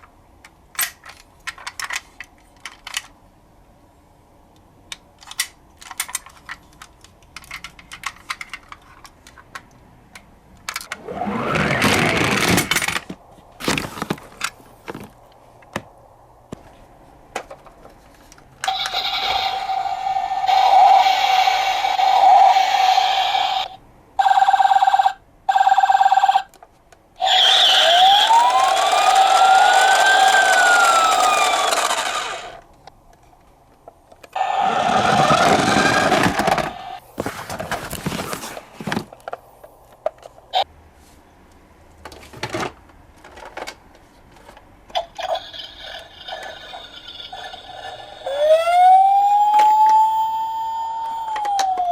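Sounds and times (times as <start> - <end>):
plastic toy clicks and knocks: 0.8 - 3.2, 4.9 - 11.0, 28.3 - 32.4
electronic toy siren tone: 27.2 - 32.2, 48.2 - 51.9
mechanical whirring rattle: 27.2 - 32.6, 34.4 - 37.0.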